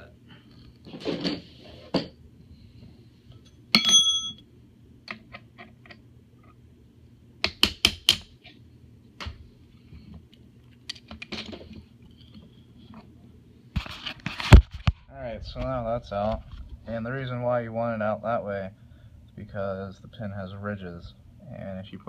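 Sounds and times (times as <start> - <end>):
ringing metallic clink: 3.8 - 4.4.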